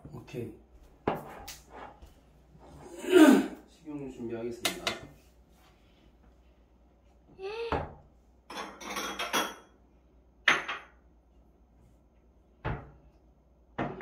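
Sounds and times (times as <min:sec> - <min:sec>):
dishes and utensils clattering: 0:08.5 - 0:09.8.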